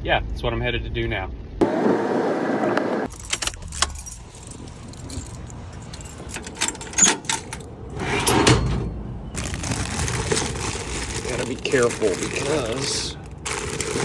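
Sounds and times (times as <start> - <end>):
keys jangling: 3.1 - 7.7.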